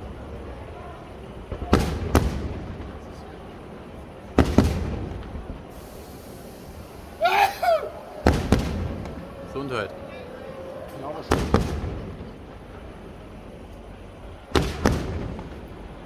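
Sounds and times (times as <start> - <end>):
firework shells bursting: 5.8 - 12.2.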